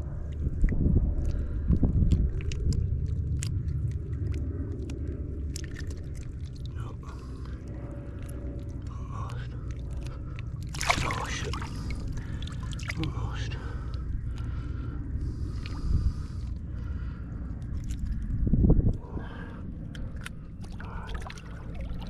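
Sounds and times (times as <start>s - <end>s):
water splash: 10.7s - 13.1s.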